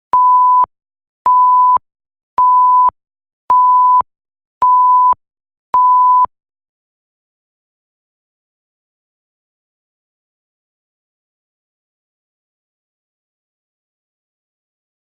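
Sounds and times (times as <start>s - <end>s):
short electronic beeps: 0.2s - 0.7s, 1.3s - 1.8s, 2.4s - 2.9s, 3.5s - 4.0s, 4.6s - 5.2s, 5.8s - 6.3s.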